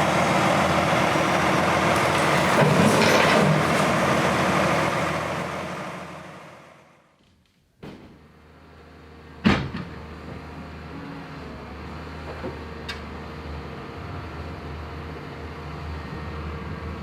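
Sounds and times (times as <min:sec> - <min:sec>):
heavy machine engine humming: 0:00.0 - 0:07.0.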